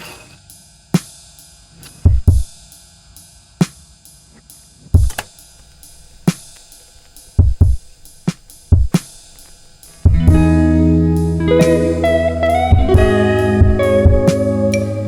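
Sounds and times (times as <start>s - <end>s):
kick drum hits: 2.1s - 2.5s, 7.4s - 9.1s, 10.0s - 10.5s, 12.7s - 14.3s.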